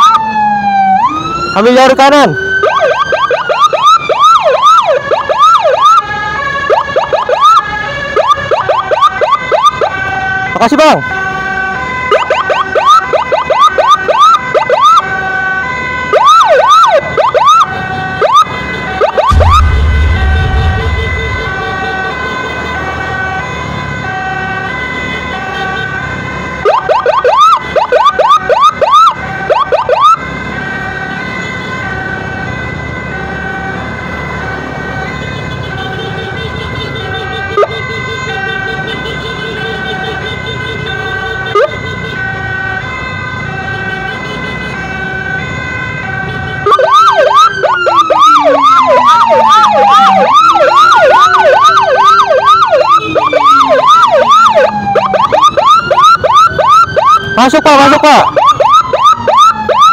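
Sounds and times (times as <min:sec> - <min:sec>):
fast siren chirps: 0:00.0 - 0:24.7, 0:26.5 - 0:35.1, 0:41.0 - 0:44.0, 0:44.8 - 0:59.9
two-tone emergency siren: 0:00.0 - 0:59.9
low rumble: 0:19.2 - 0:22.3.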